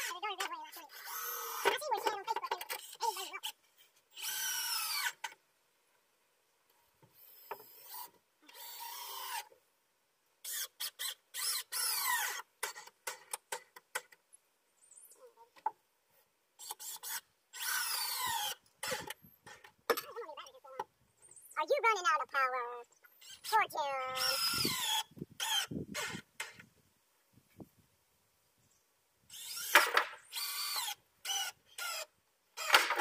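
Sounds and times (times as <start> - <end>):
cordless drill whirring: 0.9 - 1.7, 4.2 - 5.3, 7.2 - 9.5, 16.6 - 19.2, 24.2 - 26.6, 29.3 - 33.0.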